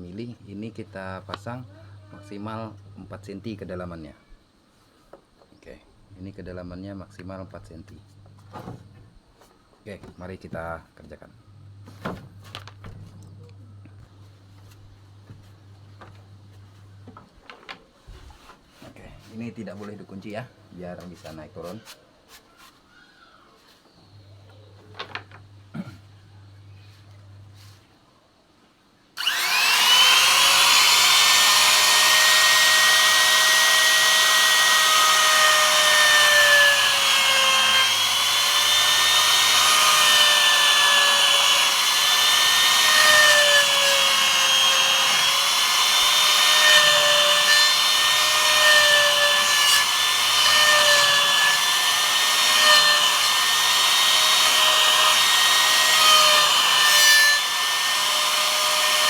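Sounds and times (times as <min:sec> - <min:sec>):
trim router whining: 0:29.2 - 0:59.0.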